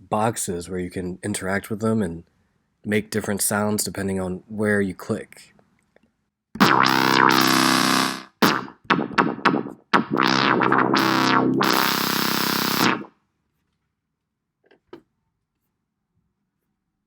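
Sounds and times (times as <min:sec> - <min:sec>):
buzzy synthesizer notes: 0:06.6 - 0:13.1.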